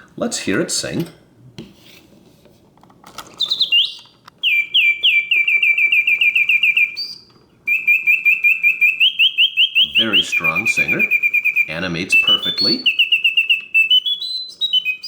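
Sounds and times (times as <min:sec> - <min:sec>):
mechanical bird whistling trill: 0:03.4 - 0:15.0.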